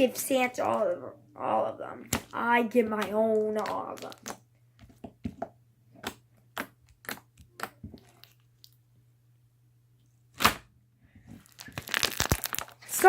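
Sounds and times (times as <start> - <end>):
slime crackling and popping: 3.0 - 4.4, 6.0 - 8.8, 11.4 - 13.0.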